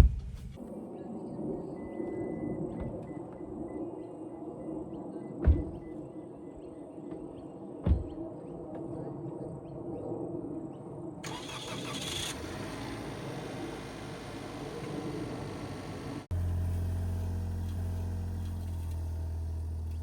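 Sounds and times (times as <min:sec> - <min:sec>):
small car engine starting: 0:11.2 - 0:20.0.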